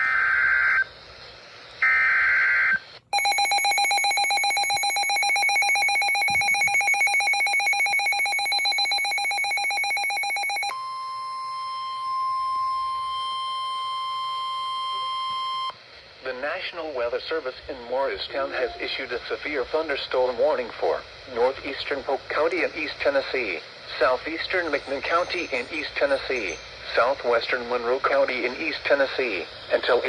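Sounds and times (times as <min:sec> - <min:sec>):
steady warning alarm tone: 0:03.1 - 0:10.7, 0:24.3 - 0:27.9.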